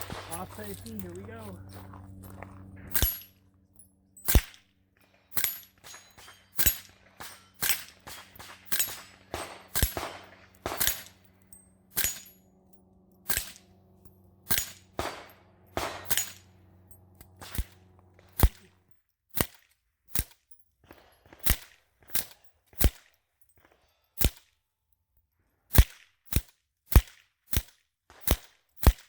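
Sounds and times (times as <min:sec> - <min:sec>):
suppressed gunshots: 0:00.0 - 0:00.9, 0:05.4 - 0:11.3, 0:14.4 - 0:16.5, 0:17.4 - 0:18.7.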